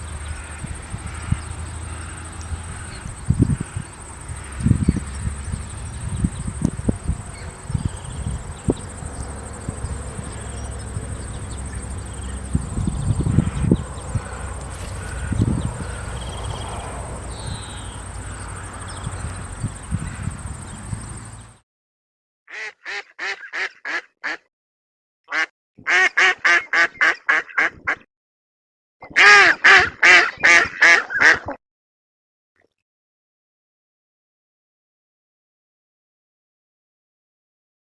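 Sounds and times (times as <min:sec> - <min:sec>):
insects trilling: 0:00.0 - 0:21.6
duck quacking: 0:14.8 - 0:16.1, 0:22.5 - 0:24.5, 0:25.3 - 0:28.0, 0:29.1 - 0:31.6.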